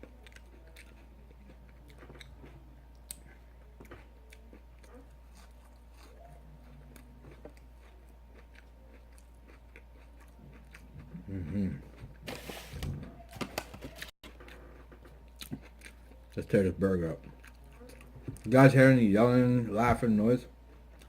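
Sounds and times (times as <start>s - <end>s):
person chewing crunchy food: 0.0s - 12.7s, 13.9s - 18.7s, 20.6s - 21.0s
faint low hum: 0.0s - 21.0s.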